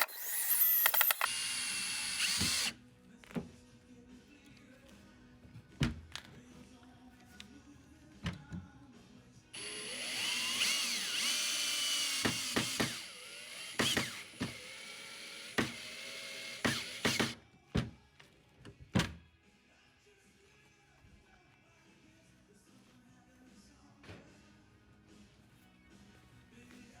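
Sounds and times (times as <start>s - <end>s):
sharp clicks and knocks: 0.0s - 1.4s
power drill whining: 0.0s - 2.7s, 9.6s - 17.4s.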